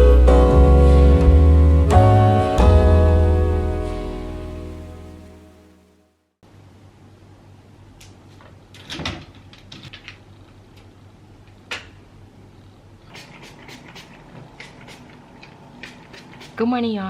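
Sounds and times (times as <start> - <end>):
steady low hum: 0.0 - 5.5.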